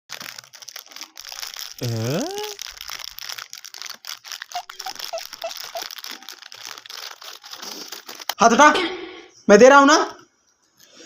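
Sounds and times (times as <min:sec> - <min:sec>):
food packet crinkling: 0:00.1 - 0:08.4
voice-like sound rising in pitch: 0:01.8 - 0:02.6.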